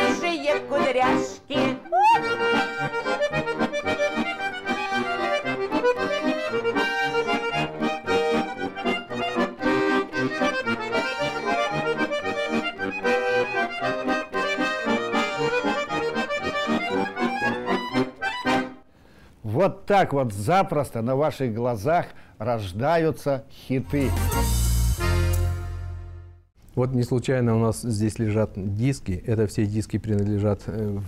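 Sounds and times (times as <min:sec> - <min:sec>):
accordion folk tune: 0:00.0 - 0:19.4, 0:23.8 - 0:26.5.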